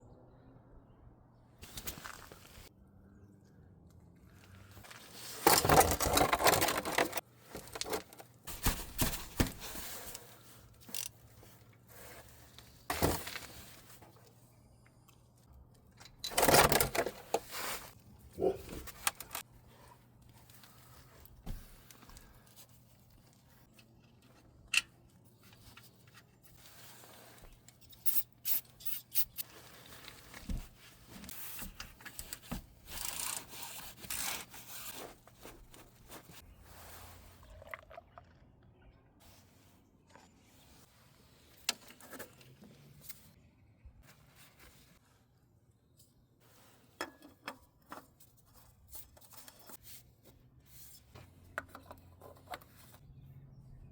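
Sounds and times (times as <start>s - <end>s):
tools scraping and clinking: 5.2s - 8.2s, 27.4s - 30.4s.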